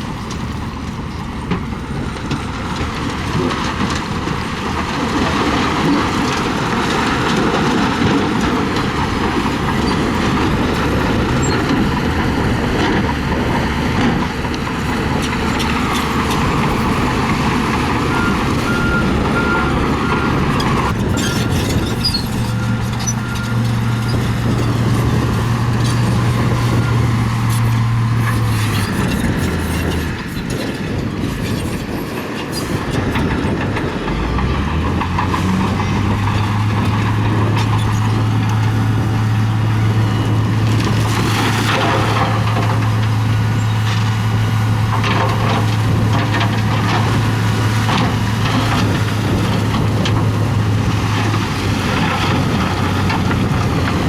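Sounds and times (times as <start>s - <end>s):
diesel construction machinery: 0.0s - 54.0s
reversing beeper: 17.8s - 25.2s.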